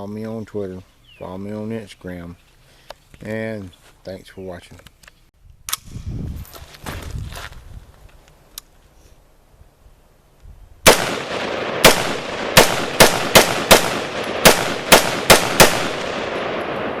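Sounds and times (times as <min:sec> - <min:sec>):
rifle firing semi-automatic shots: 0:10.8 - 0:17.0.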